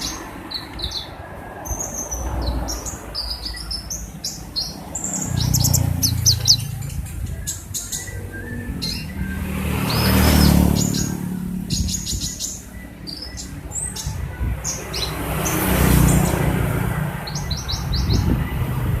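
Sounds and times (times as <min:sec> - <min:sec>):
bird chirping: 0:00.0 - 0:19.0
vehicles passing: 0:00.0 - 0:19.0.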